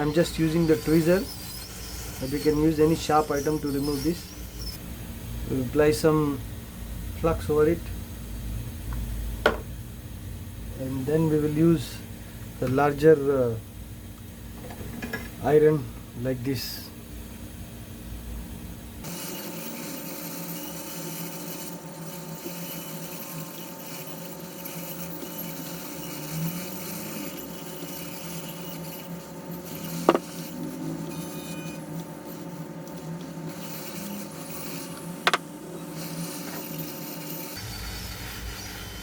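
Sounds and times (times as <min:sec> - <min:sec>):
steady low hum: 0:00.0 - 0:39.0
tools scraping on circuit board: 0:19.0 - 0:38.8.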